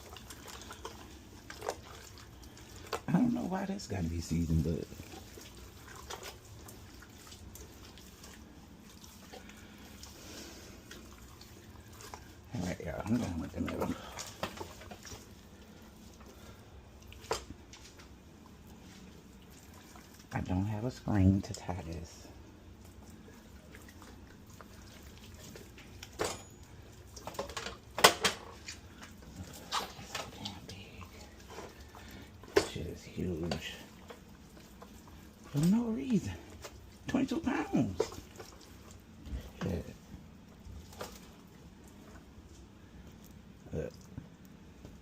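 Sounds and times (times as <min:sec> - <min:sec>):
low steady hum: 0:00.0 - 0:45.0
kitchen knocks and clatters: 0:25.9 - 0:28.7.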